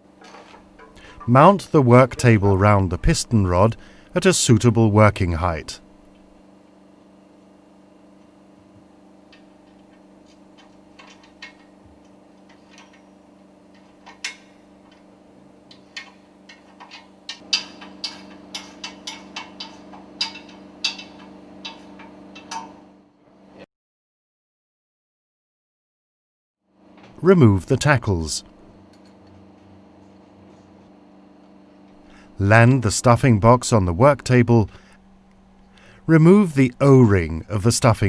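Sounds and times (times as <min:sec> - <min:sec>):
machinery hum: 0:00.0 - 0:23.6, 0:26.8 - 0:38.0
metallic clicks and clanks of tools: 0:00.2 - 0:01.4, 0:10.6 - 0:11.7, 0:12.5 - 0:13.1, 0:13.7 - 0:15.0, 0:15.7 - 0:22.8.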